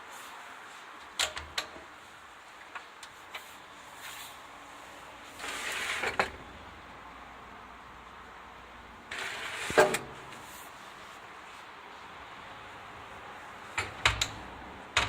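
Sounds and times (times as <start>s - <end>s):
faint background noise: 0.0s - 15.0s
sharp metallic clicks and knocks: 1.1s - 1.8s, 13.8s - 15.0s
rasping scrape: 9.1s - 10.5s.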